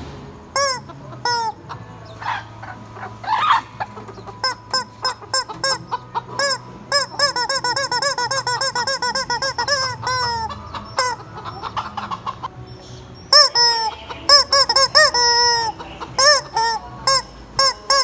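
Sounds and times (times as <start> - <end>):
rubber squeeze-toy squawks: 0.6 - 1.6, 4.4 - 11.2, 13.3 - 18.0.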